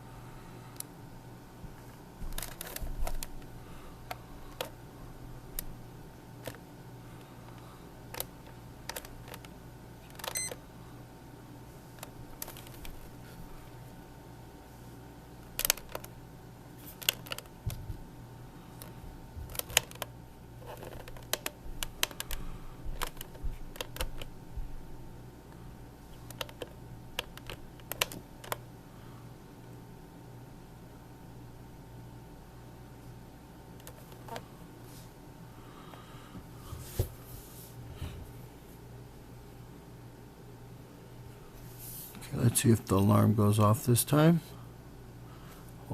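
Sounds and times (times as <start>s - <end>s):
steady low hum: 0.0s - 45.9s
plastic buttons clicking: 26.3s - 28.6s.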